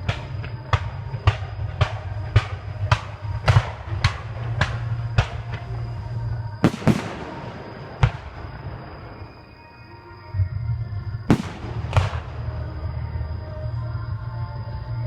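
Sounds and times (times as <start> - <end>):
fireworks bangs echoing: 0.0 - 10.2, 11.3 - 13.0.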